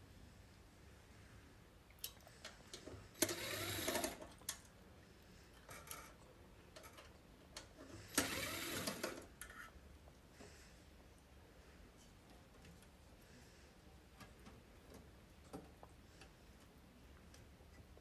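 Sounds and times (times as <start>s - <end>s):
power driver whining: 3.2s - 4.2s, 8.1s - 9.2s.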